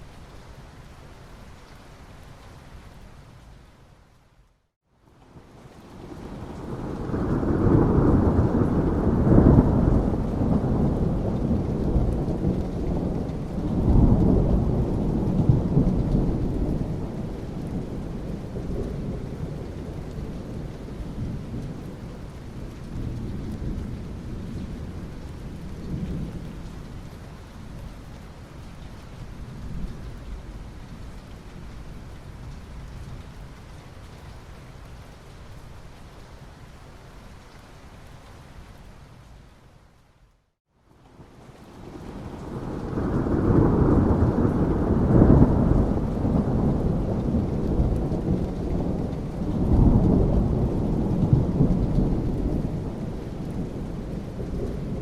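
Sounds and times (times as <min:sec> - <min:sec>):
steady rain: 0:00.0 - 0:55.0
rolling thunder: 0:06.2 - 0:26.5, 0:41.8 - 0:55.0.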